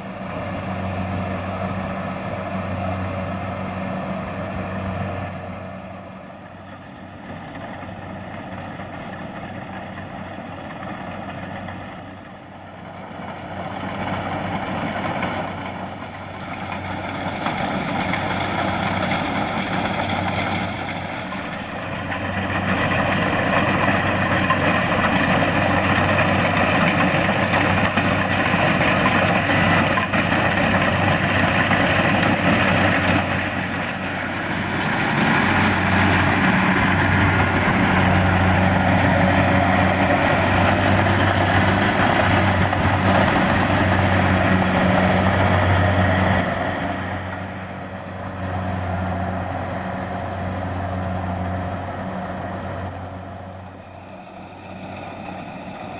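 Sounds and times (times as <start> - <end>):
combine harvester diesel engine: 0.0 - 55.9.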